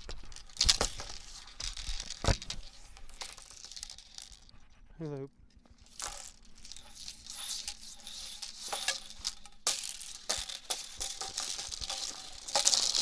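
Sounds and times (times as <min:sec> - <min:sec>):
hula hoop swishing and clicking: 0:00.0 - 0:04.6, 0:05.6 - 0:13.0.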